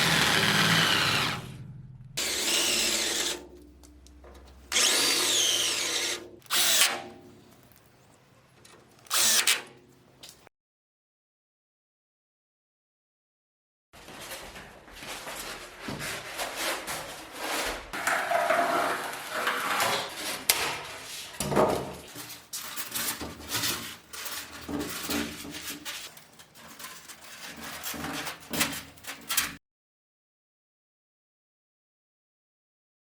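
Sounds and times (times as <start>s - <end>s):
wood and tools clattering: 15.9s - 29.6s.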